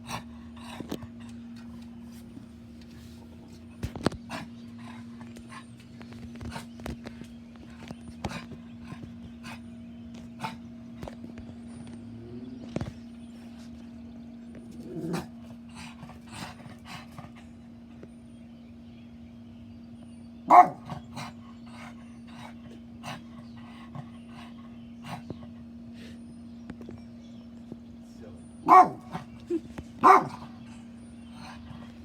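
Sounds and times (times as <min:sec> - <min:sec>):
steady low hum: 0:00.0 - 0:32.0
dog barking: 0:20.5 - 0:21.0, 0:28.6 - 0:29.3, 0:30.0 - 0:30.5.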